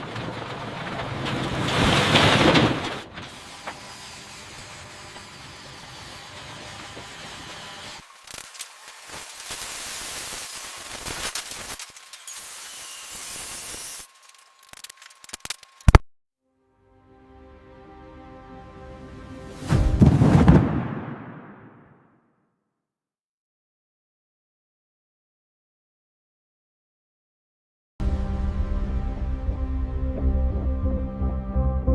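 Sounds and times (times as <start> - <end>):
music: 16.4 - 20.3, 28.0 - 31.9
sharp loud hit: 19.7 - 22.0.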